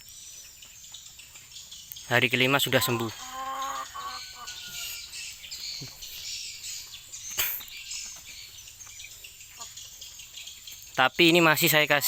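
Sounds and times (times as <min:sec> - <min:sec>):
birds chirping: 0:00.0 - 0:12.0
chicken calling: 0:02.1 - 0:10.4
steady high hiss: 0:03.8 - 0:12.0
sharp click: 0:07.3 - 0:07.8.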